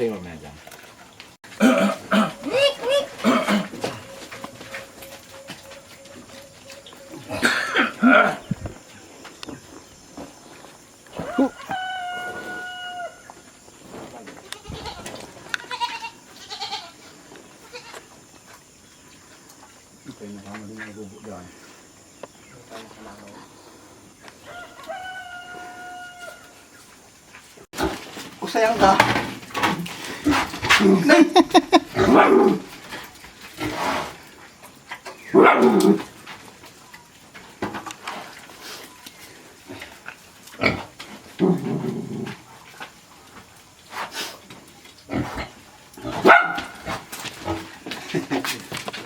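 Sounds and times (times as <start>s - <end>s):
farm animals crying: 1.5s - 8.6s, 11.1s - 13.4s, 14.2s - 18.2s, 24.4s - 26.7s
dog barking: 32.1s - 32.6s, 35.3s - 35.9s, 46.2s - 46.8s.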